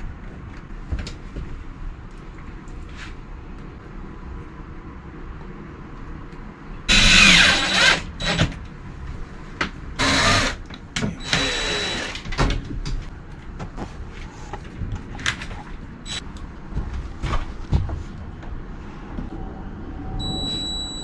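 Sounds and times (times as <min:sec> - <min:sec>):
power drill running: 0:06.9 - 0:08.5, 0:10.0 - 0:10.6, 0:11.2 - 0:12.2.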